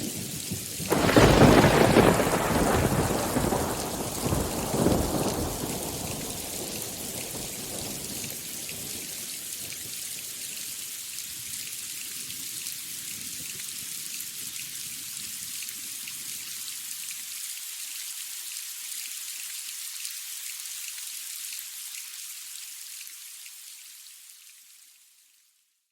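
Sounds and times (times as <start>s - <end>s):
low thunder rumble: 0.0s - 9.0s
rain hiss with pattering drops: 0.0s - 25.9s.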